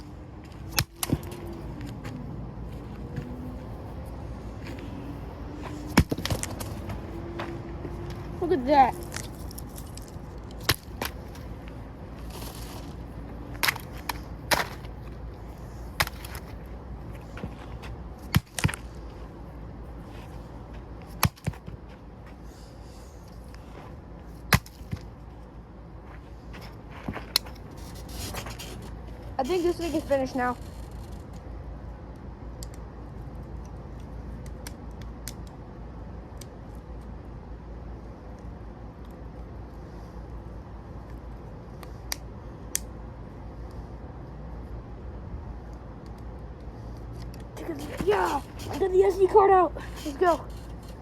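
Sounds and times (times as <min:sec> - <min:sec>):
steady low hum: 0:00.0 - 0:51.0
light clicks of plastic pieces: 0:32.1 - 0:32.9.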